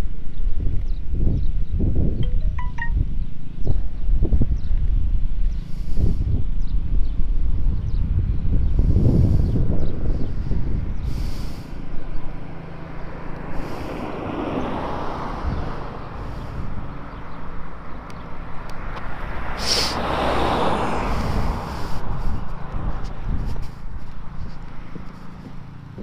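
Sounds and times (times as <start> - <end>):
road and wind noise: 0.0 - 26.0
vehicle engine running: 10.1 - 26.0.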